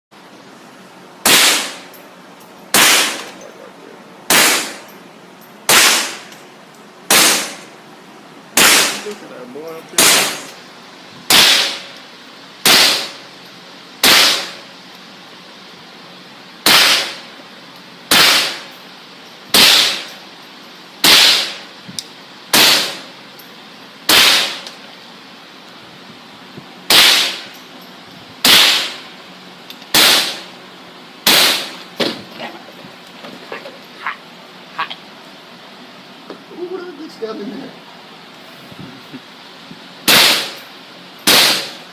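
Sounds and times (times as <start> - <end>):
gunshots: 1.2 - 1.9, 2.7 - 3.4, 4.3 - 4.8, 5.7 - 6.3, 7.1 - 7.7, 8.6 - 9.2, 10.0 - 10.5, 11.3 - 11.9, 12.6 - 13.2, 14.0 - 14.6, 16.6 - 17.2, 18.1 - 18.7, 19.5 - 20.1, 21.0 - 21.6, 22.5 - 23.1, 24.1 - 24.6, 26.9 - 27.5, 28.4 - 29.0, 29.9 - 30.4, 31.2 - 31.8, 40.1 - 40.6, 41.2 - 41.8.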